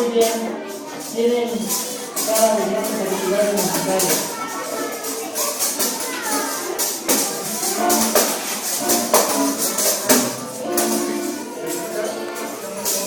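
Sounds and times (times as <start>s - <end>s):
live band music: 5.8s - 13.0s.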